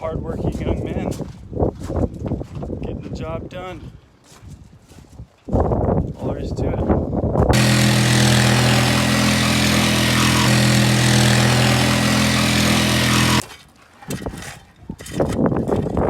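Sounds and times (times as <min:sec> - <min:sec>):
engine running steadily: 0:07.6 - 0:13.4.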